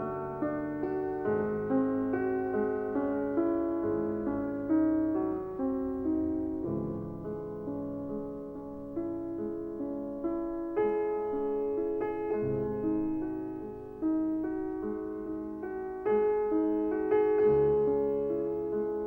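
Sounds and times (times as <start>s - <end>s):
slow solo piano music: 0.0s - 19.0s.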